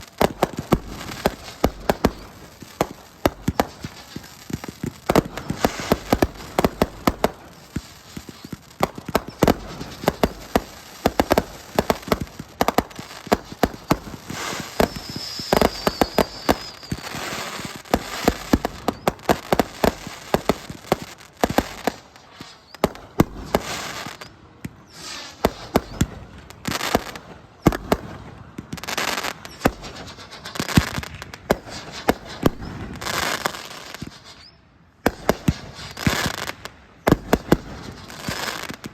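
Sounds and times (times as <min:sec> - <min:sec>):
fireworks banging and crackling: 0:00.0 - 0:38.9
high wavering whistle: 0:14.8 - 0:17.0.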